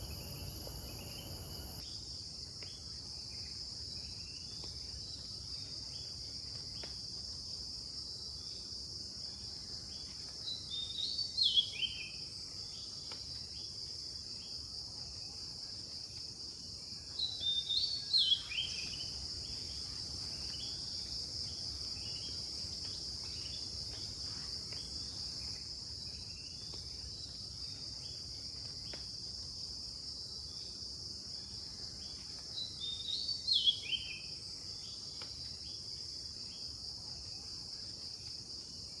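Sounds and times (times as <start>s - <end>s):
night insects droning: 0.0s - 2.4s.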